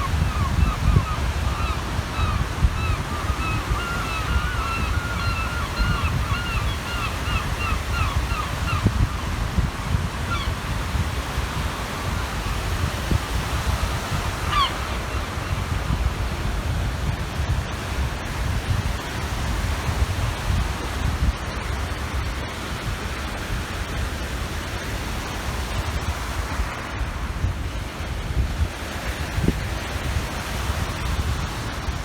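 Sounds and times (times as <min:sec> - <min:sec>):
gulls calling: 0:00.0 - 0:10.8, 0:14.0 - 0:15.6
waves on the shore: 0:00.0 - 0:32.0
wind on microphone: 0:00.0 - 0:32.0.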